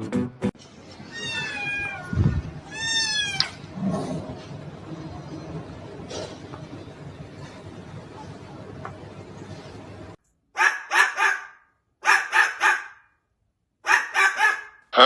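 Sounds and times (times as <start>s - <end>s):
dog barking: 10.6s - 13.1s, 13.8s - 14.8s.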